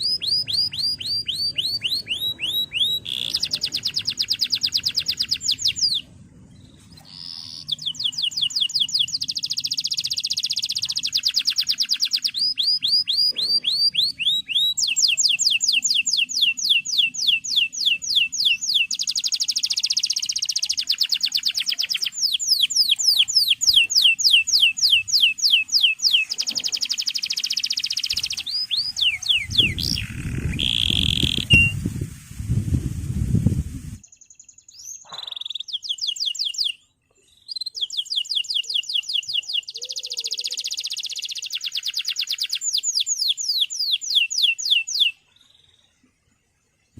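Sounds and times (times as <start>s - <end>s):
canary singing trills: 0.0s - 31.9s, 34.0s - 45.9s
low rumbling noise: 5.5s - 7.0s, 28.2s - 34.0s.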